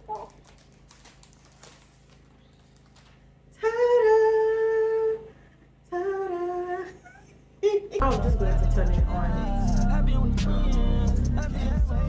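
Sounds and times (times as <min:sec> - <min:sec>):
person humming held notes: 0:05.9 - 0:12.0.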